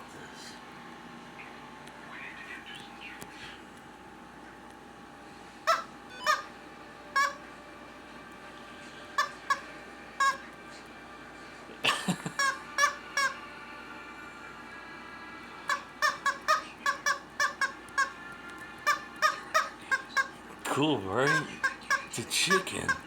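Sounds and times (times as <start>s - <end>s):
squeeze toy squeaky squawks: 5.6s - 6.6s, 7.2s - 7.4s, 9.2s - 10.5s, 12.4s - 13.4s, 15.7s - 18.2s, 18.8s - 20.4s, 21.2s - 23.0s.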